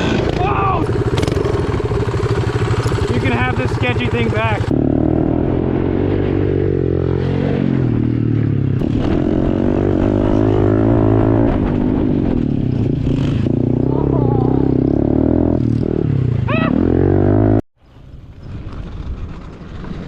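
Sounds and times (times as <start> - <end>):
pit bike engine revving: 0.0 - 17.6.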